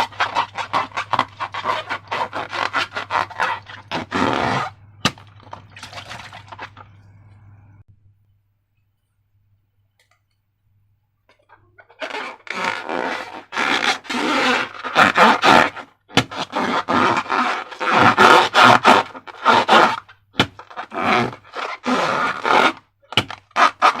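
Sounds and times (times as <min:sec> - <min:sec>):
wet squelching slime: 0:00.0 - 0:07.0.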